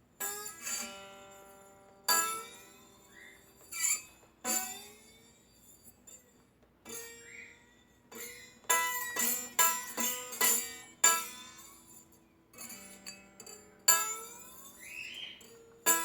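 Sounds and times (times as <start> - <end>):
ringing guitar string strikes: 0.2 - 5.8.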